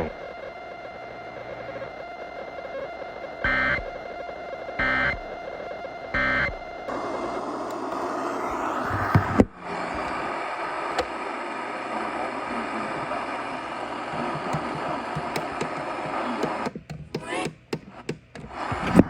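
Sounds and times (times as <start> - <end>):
radio static hiss: 0.0 - 19.0.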